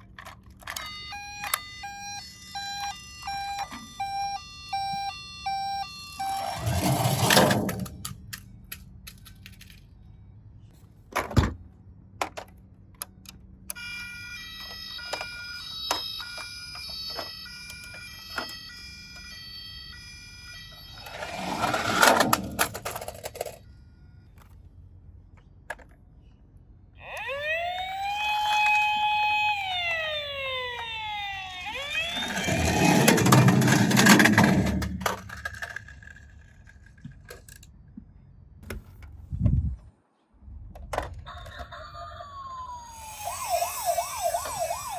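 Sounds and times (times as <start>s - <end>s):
toy cars clicking and rolling: 0.0s - 5.1s, 5.7s - 10.0s, 12.2s - 19.4s, 20.4s - 23.6s, 27.1s - 37.8s
electronic siren-like tone: 0.7s - 8.1s, 13.8s - 22.9s, 27.0s - 35.4s, 41.7s - 44.9s
siren wail: 0.7s - 8.2s, 13.7s - 22.9s, 27.0s - 35.5s, 41.2s - 44.9s.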